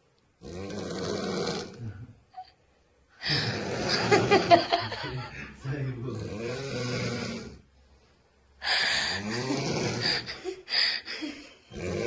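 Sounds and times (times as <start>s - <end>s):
person snoring loudly: 0.4s - 2.0s, 3.2s - 4.9s, 6.1s - 7.6s, 8.6s - 10.5s, 11.7s - 12.0s.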